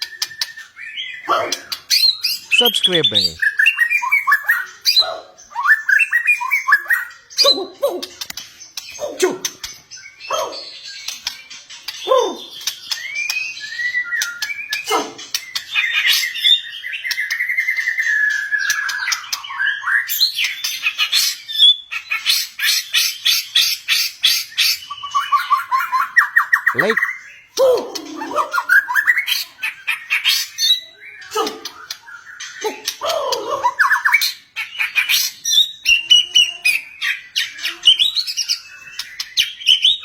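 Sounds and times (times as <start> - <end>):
bird trilling: 0.0 - 8.3, 20.8 - 36.7
songbird singing whistled phrases: 0.0 - 40.0.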